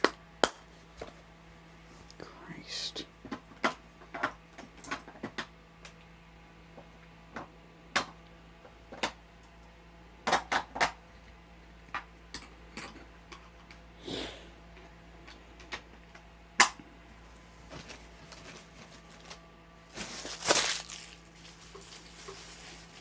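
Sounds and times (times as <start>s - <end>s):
faint electrical hum: 0.0s - 23.0s.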